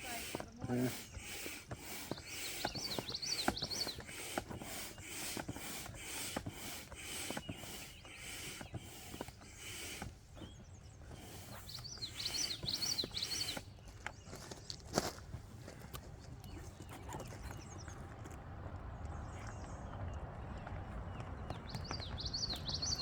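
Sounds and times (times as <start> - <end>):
air pump hissing: 0.0 - 13.7
songbird chirping: 0.0 - 23.0.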